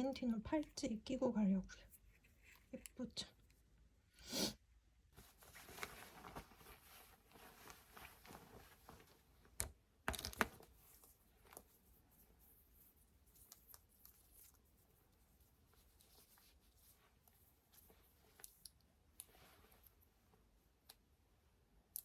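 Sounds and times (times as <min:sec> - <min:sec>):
faint rustling: 0:05.1 - 0:09.6.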